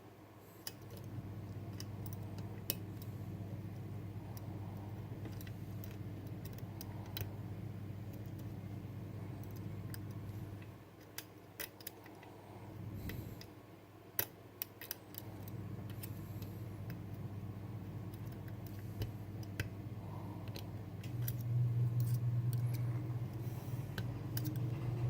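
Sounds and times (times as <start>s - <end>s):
steady low hum: 0.0s - 25.0s
lock pick clicking and scratching: 5.2s - 7.3s, 14.2s - 16.2s.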